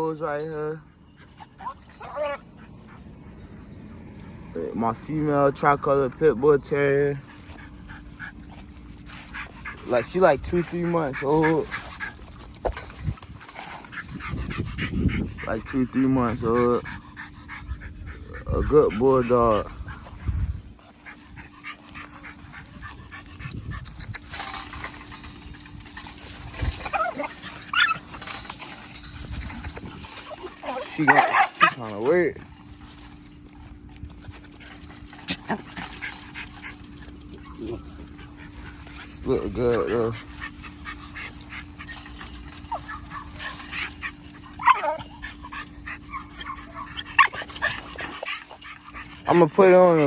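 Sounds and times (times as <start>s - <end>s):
scuffling and rustling: 0.0s - 3.3s, 7.2s - 50.0s
puppy whining and yipping: 1.2s - 3.0s, 26.3s - 31.8s, 39.9s - 49.3s
puppy whining yips: 1.4s - 2.4s, 26.8s - 28.0s, 44.5s - 45.1s
low steady hum: 5.8s - 50.0s.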